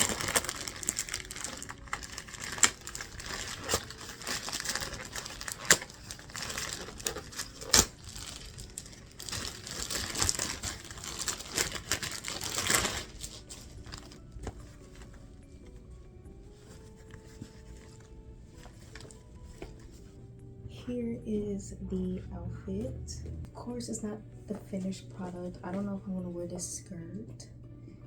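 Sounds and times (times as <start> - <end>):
costume crinkling and rustling: 0.0 - 20.2.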